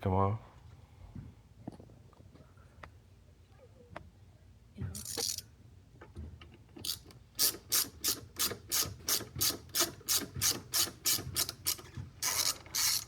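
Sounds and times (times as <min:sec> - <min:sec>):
rasping ratchet strokes: 0:06.8 - 0:13.0.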